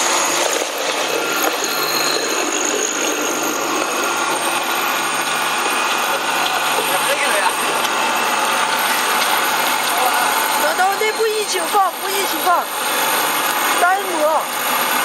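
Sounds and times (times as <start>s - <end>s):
colloid mill running: 0.0s - 15.0s.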